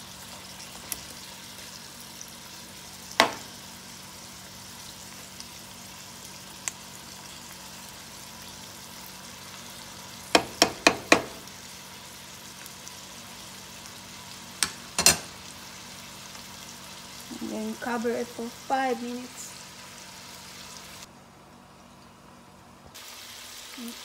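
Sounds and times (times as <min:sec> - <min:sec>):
food sizzling in a frying pan: 0:00.0 - 0:24.0
cookware clacks: 0:14.6 - 0:15.3.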